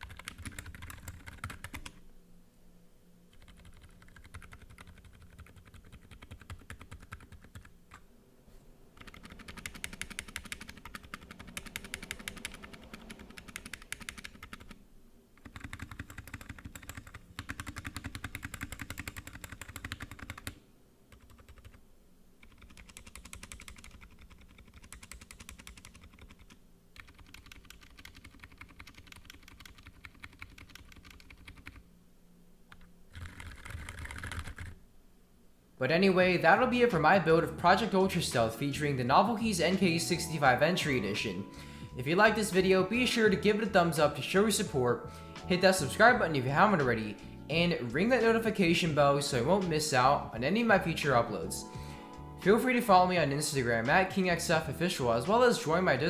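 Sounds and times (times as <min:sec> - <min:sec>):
quiet mechanical keyboard typing: 0:00.0 - 0:02.0, 0:03.3 - 0:08.1, 0:09.0 - 0:21.8, 0:22.4 - 0:31.9, 0:32.7 - 0:34.8.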